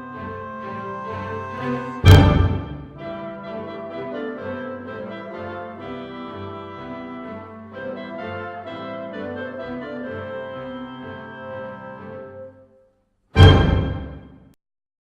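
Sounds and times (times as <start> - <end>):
orchestral music with brass and strings: 0.0 - 12.6, 13.4 - 14.4.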